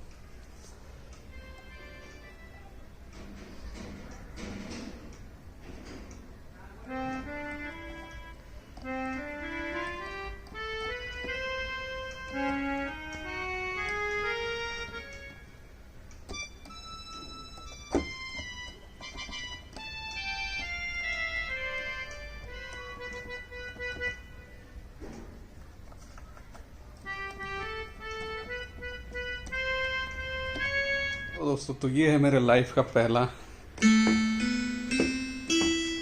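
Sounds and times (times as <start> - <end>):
electronic keyboard notes: 1.2 - 3.2, 6.8 - 25.0, 27.0 - 31.6, 33.8 - 36.0.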